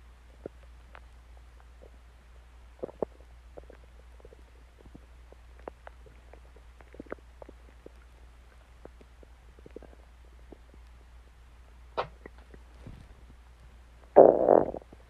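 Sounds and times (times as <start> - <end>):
stomach growling and gurgling: 2.7 - 11.0, 14.1 - 15.0.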